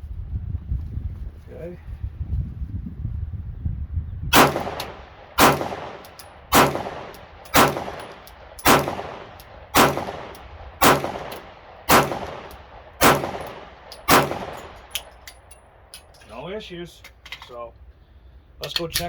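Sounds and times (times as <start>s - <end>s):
pistol shots echoing: 4.3s - 15.6s.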